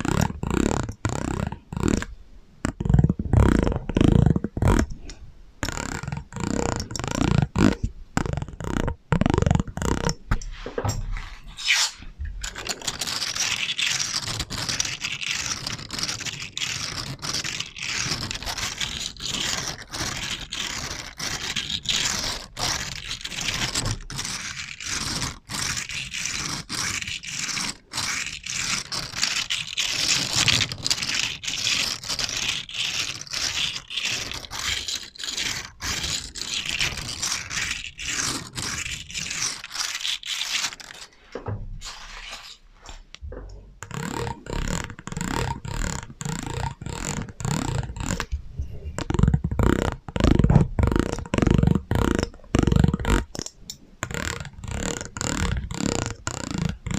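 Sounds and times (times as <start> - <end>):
short scratchy scraping strokes: 2.8 - 43.2, 43.8 - 56.9.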